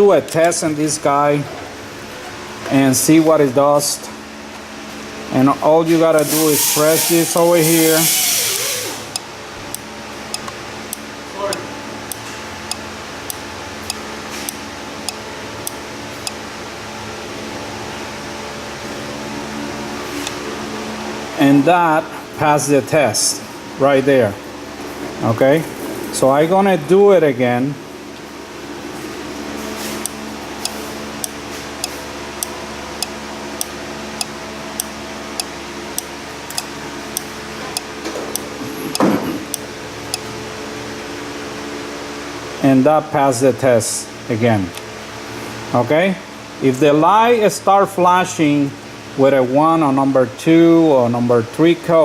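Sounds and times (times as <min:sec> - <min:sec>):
steady hum: 0:00.0 - 0:52.0
relay clicking on and off: 0:06.2 - 0:12.2.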